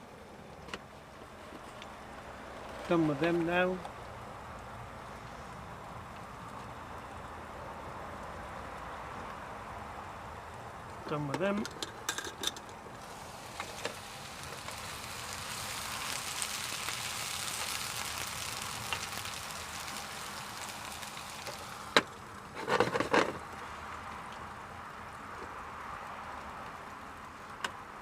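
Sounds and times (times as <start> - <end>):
mushrooms sizzling in a pan: 13.0 - 22.4.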